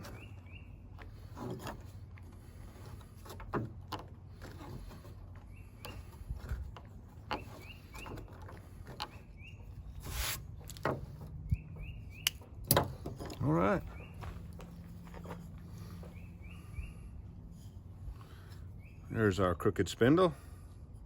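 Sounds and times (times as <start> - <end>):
birds chirping: 0.0 - 3.2, 4.2 - 20.6
knife blade scraping wood: 1.1 - 13.4.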